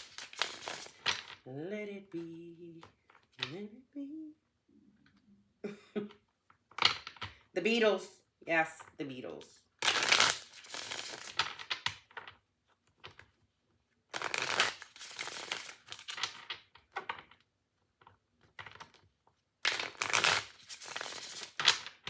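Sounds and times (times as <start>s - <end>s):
cards being shuffled: 0.0s - 1.5s, 9.8s - 13.4s, 14.1s - 17.4s, 18.4s - 22.0s.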